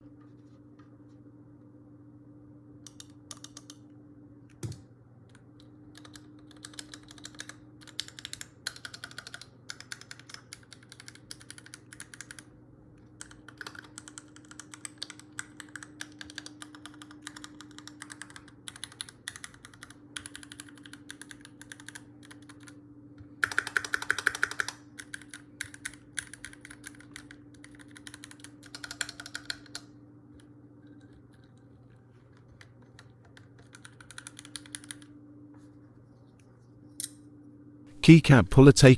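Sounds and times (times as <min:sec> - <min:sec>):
faint steady hum: 0:00.0 - 0:38.9
mechanical keyboard typing: 0:02.9 - 0:03.8, 0:04.6 - 0:04.8, 0:05.9 - 0:12.5, 0:13.1 - 0:22.8, 0:23.4 - 0:29.9, 0:31.0 - 0:35.1.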